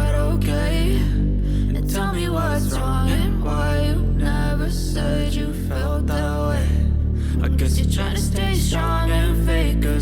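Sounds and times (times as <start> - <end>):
pop music with bass: 0.0 - 10.0.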